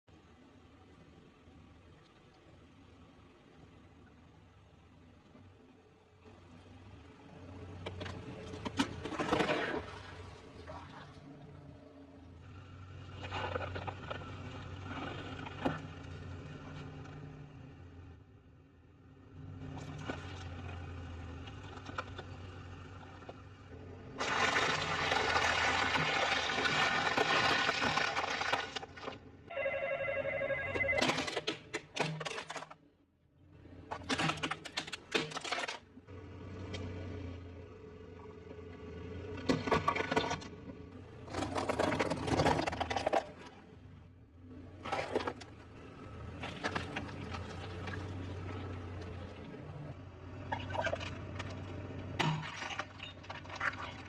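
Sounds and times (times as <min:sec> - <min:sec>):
car body crushing and grinding: 0:07.8 - 0:10.4, 0:24.2 - 0:29.2, 0:30.8 - 0:32.9, 0:33.6 - 0:36.0, 0:39.2 - 0:43.8, 0:44.5 - 0:49.0, 0:50.5 - 0:54.0
ringing metallic tone: 0:29.5 - 0:31.0
metal and glass crunching: 0:34.1 - 0:35.8.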